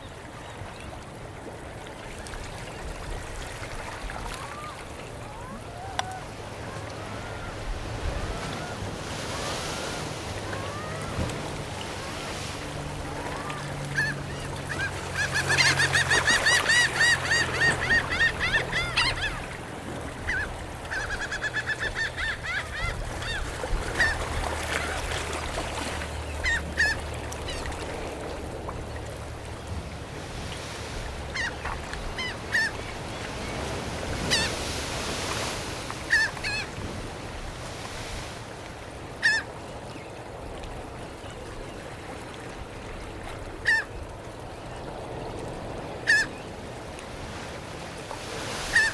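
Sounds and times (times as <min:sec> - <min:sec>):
gulls calling: 0:04.2 - 0:40.1, 0:45.6 - 0:48.9.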